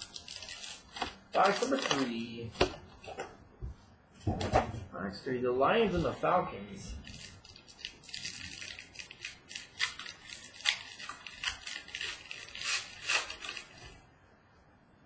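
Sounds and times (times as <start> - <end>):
packaging crinkling and rustling: 0.0 - 3.4, 7.0 - 14.0.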